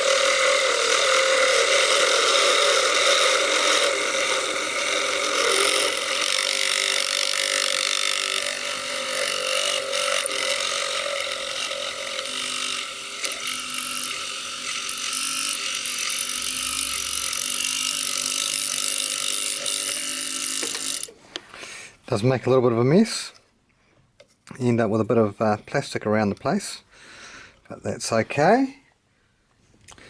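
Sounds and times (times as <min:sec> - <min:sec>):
blade shaving plastic: 0:00.0 - 0:21.1
tyre-truing machine running: 0:00.0 - 0:21.1.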